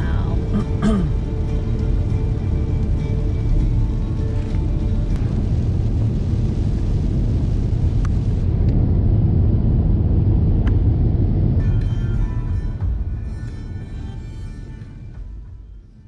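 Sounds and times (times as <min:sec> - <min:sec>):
loud low rumble: 0:00.0 - 0:16.0.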